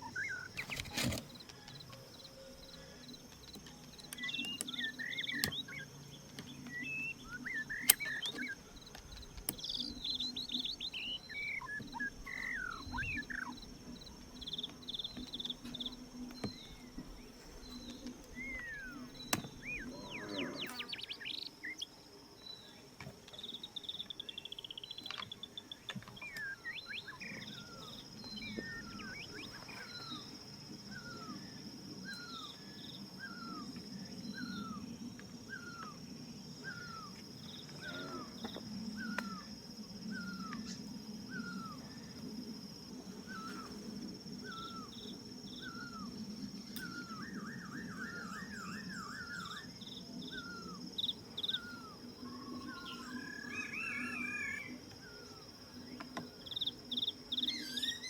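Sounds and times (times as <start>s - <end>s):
birds chirping: 0.0s - 58.0s
high insect drone: 0.0s - 58.0s
sharp clicks: 3.3s - 5.8s, 7.8s - 9.8s.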